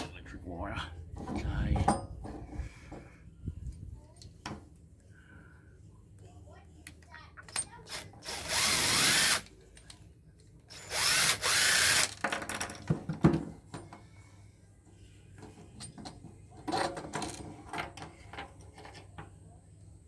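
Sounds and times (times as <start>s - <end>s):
cordless drill running: 7.9s - 9.5s, 10.7s - 12.2s.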